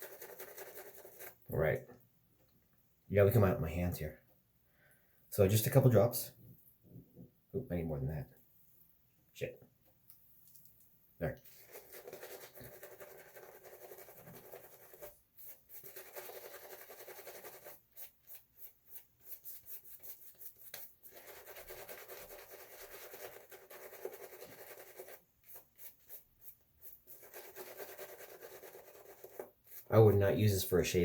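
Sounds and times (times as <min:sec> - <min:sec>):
shaving brush rubbing lather: 0:00.0 - 0:01.4, 0:11.4 - 0:31.0.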